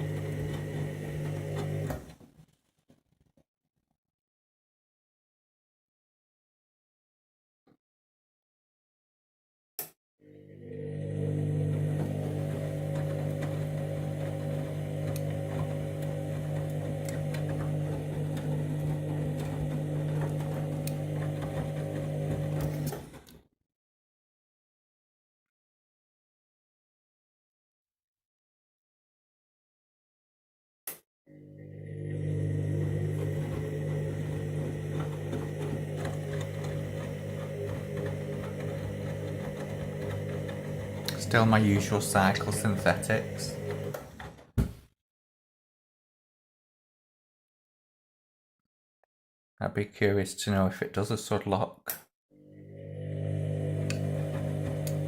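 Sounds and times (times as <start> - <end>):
washing machine motor humming: 0.0 - 2.1, 10.3 - 23.2, 31.3 - 44.4, 52.4 - 55.0.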